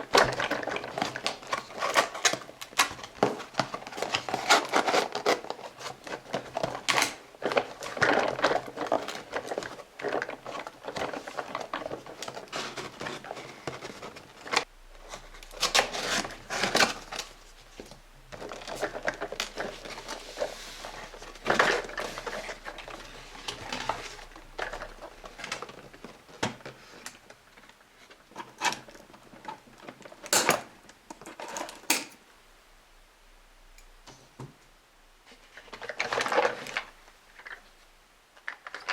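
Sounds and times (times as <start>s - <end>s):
plastic toy parts clattering: 0.0s - 27.7s.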